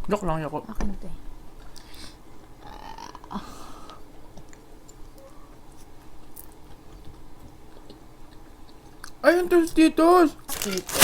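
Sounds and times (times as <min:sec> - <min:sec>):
person chewing with wet clicks: 0:03.9 - 0:09.2.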